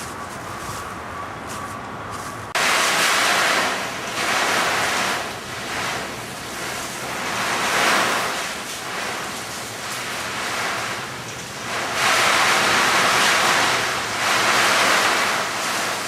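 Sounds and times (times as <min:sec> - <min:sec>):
storm wind: 0:00.0 - 0:16.0
rushing water: 0:02.5 - 0:16.0.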